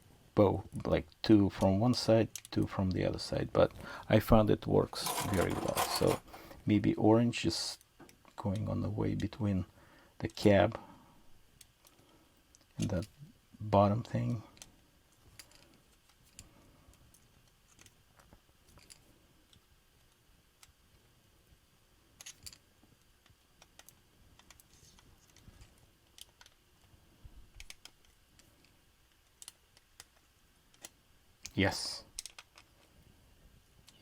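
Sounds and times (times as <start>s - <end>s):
faint small clicks and taps: 22.2s - 26.9s, 27.5s - 31.6s.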